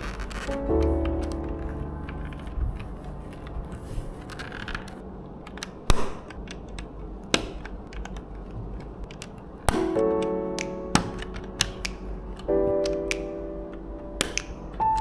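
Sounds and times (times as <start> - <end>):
background music: 0.0 - 5.0, 9.7 - 15.0
plastic bricks clicking: 4.3 - 13.3, 14.2 - 15.0.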